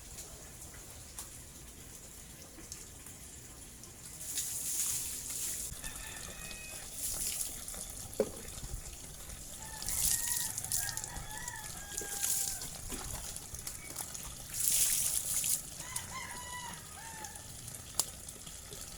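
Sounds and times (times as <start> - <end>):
water splashing and pouring: 0.5 - 18.9
rooster crowing: 5.7 - 7.0, 9.6 - 12.8, 15.8 - 17.6.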